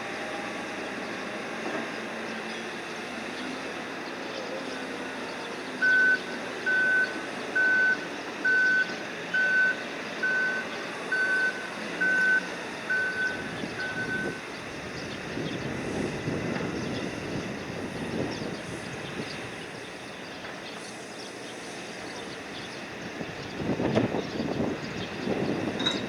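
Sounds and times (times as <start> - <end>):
machinery noise: 0.0 - 26.0
reversing alarm beeping: 4.8 - 14.5.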